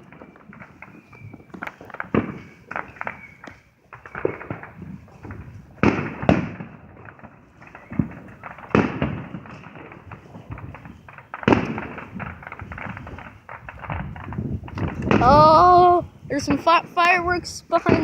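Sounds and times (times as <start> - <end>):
fireworks bangs: 0.0 - 18.0
fireworks crackling: 0.0 - 18.0.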